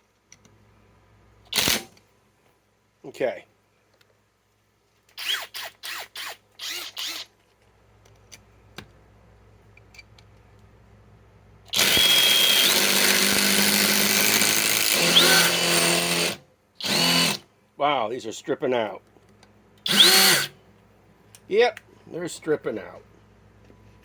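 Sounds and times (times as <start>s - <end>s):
impact wrench running: 11.7s - 17.4s, 19.8s - 20.5s.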